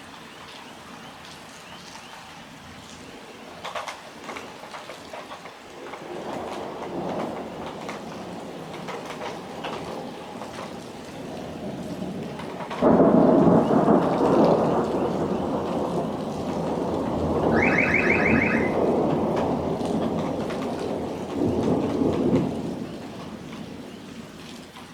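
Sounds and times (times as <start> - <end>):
rain falling steadily: 0.0 - 24.9
thunder clap and rumble: 5.9 - 24.4
rapid high-pitched beeps: 17.5 - 18.8.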